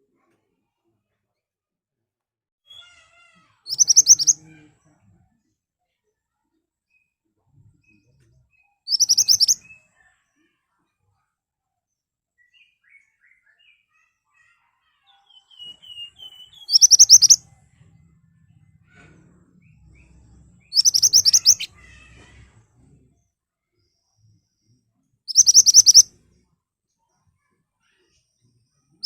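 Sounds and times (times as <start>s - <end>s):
bird singing high sharp notes: 8.9s - 9.6s, 15.3s - 17.4s, 20.7s - 21.7s, 25.3s - 26.1s.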